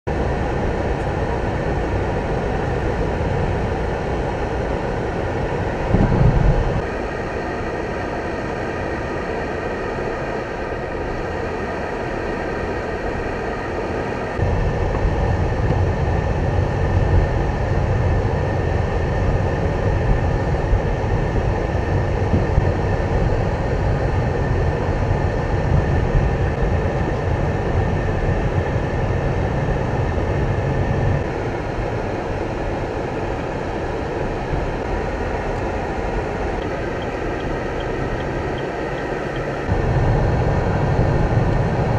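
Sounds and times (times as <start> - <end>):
deep rumble: 0.1 - 7.0, 14.4 - 41.9
highway traffic noise: 0.1 - 41.9.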